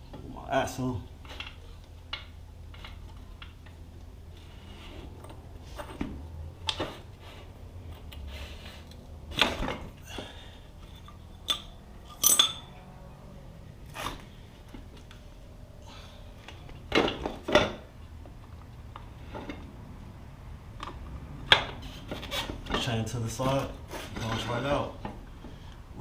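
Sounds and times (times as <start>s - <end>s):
metal parts clinking: 10.8s - 12.8s.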